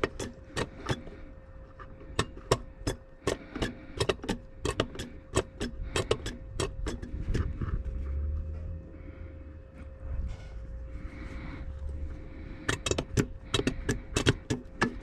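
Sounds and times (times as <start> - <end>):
hand tools clicking on metal: 0.0 - 7.5, 12.7 - 15.0
faint steady hum: 0.0 - 15.0
low rumble: 5.8 - 15.0.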